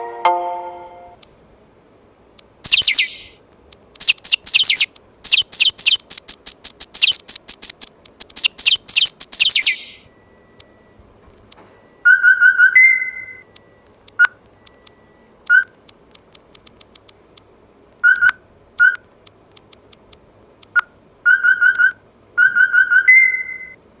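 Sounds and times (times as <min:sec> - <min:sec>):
sharp high ticks: 0:02.4 - 0:10.0, 0:13.5 - 0:17.5, 0:18.2 - 0:20.8
electronic notification chirps: 0:02.6 - 0:03.3, 0:04.0 - 0:10.0.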